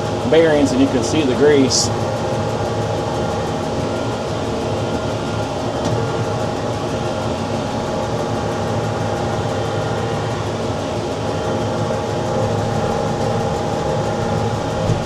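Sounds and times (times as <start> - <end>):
tractor engine drone: 0.0 - 15.0
baler rumble and clatter: 11.8 - 15.0.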